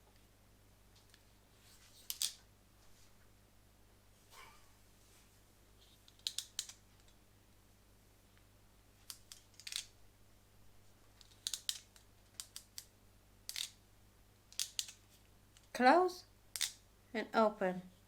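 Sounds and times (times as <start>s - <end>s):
hand tools and plastic clicking: 11.2s - 12.9s, 13.5s - 13.8s, 14.5s - 15.7s, 16.5s - 16.8s.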